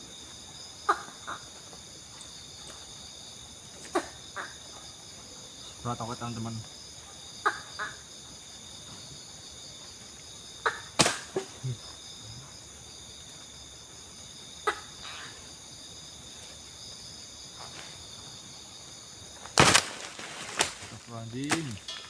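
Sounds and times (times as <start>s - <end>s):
crickets droning: 0.0s - 22.0s.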